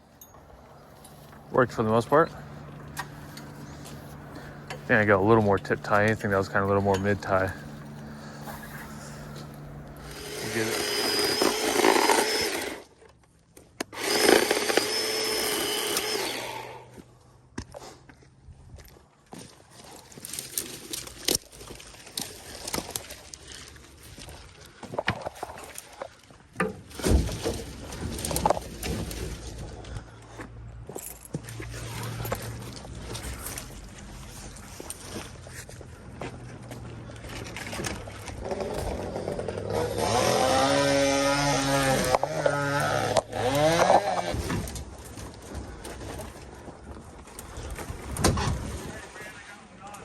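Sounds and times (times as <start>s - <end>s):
low engine hum: 0.4s - 11.1s
chainsaw revving: 7.0s - 12.9s, 13.9s - 17.0s, 38.3s - 44.6s.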